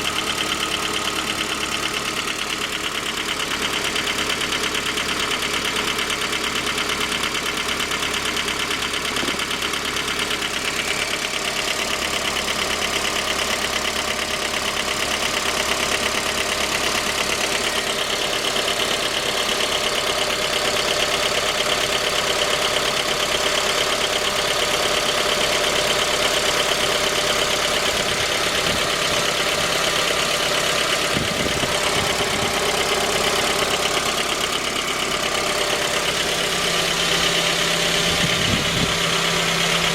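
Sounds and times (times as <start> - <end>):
engine idling with light knock: 0.0 - 39.9.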